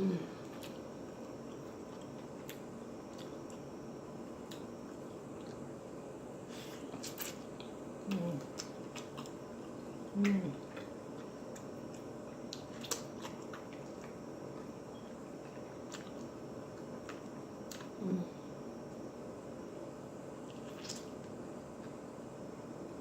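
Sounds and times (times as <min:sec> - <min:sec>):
low voice hums: 0:00.0 - 0:00.5, 0:08.0 - 0:08.6, 0:10.1 - 0:10.7, 0:18.0 - 0:18.5
close chewing of food: 0:00.4 - 0:05.8, 0:06.8 - 0:18.6
lip smacks and mouth clicks: 0:10.7 - 0:14.2, 0:20.5 - 0:21.2.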